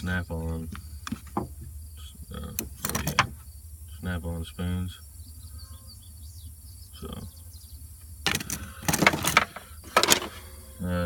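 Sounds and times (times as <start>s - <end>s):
low steady hum: 0.0s - 11.0s
metal tools clattering: 8.3s - 10.4s.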